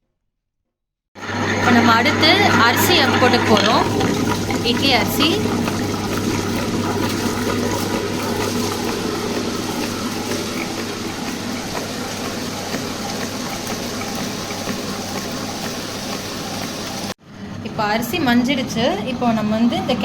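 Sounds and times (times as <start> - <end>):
wet grinder motor hum: 1.2 - 20.0
wet churning swish: 1.4 - 17.2.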